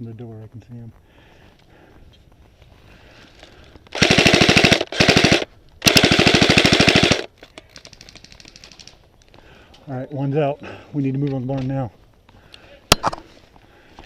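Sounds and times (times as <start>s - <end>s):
faint patter of quick shots: 3.7s - 9.2s
airsoft rifle firing bursts: 3.9s - 8.9s.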